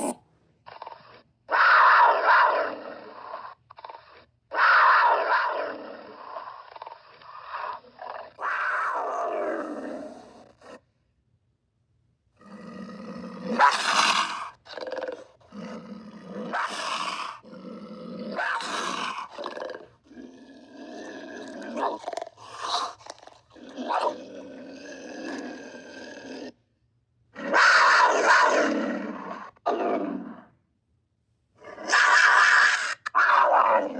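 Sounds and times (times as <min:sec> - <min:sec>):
panther calling: 0:00.0 - 0:03.2.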